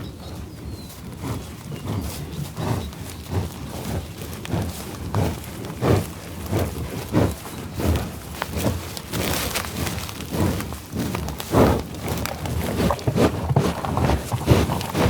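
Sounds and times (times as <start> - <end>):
buffalo grunting low: 10.3 - 15.0.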